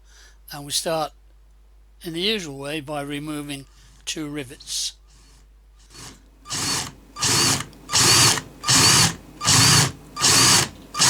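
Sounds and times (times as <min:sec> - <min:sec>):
electric drill drilling metal: 0:05.2 - 0:11.0.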